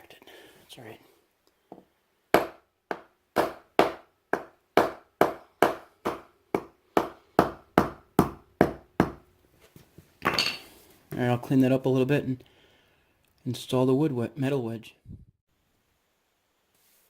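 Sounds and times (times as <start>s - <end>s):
hammer striking wooden wedge: 2.4s - 9.2s.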